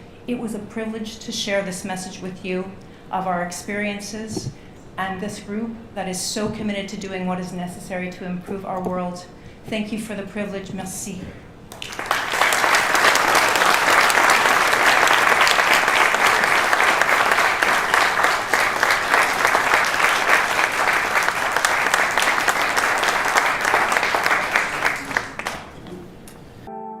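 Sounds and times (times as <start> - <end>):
large audience applauding: 11.7 - 25.8.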